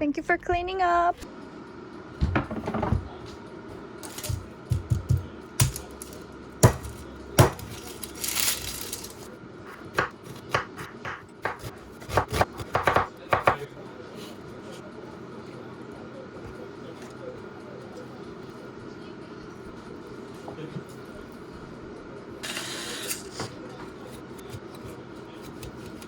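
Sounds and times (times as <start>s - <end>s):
utensils and dishes clattering: 4.0s - 4.5s, 5.6s - 9.3s.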